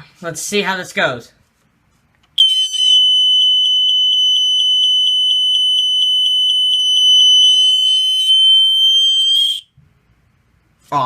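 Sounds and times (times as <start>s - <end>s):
smoke alarm horn: 2.4s - 9.7s.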